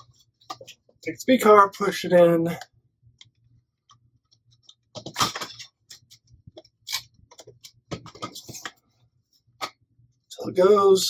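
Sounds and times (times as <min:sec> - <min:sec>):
plastic clicks and knocks: 0:07.3 - 0:08.8.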